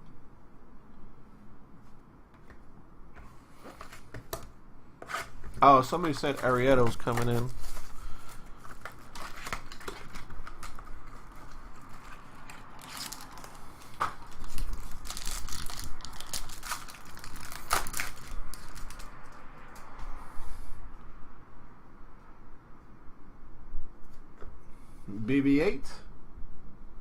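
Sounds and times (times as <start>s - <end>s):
cards being handled: 3.2s - 19.2s
card pack wrapper crinkling: 5.8s - 19.4s.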